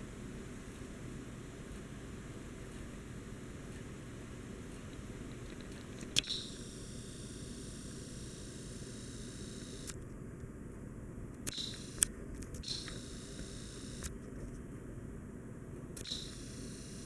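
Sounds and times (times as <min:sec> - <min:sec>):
ceiling fan whirring: 0:00.0 - 0:17.0
small clicks: 0:04.8 - 0:06.8, 0:09.2 - 0:10.5, 0:11.4 - 0:14.6, 0:16.0 - 0:17.0.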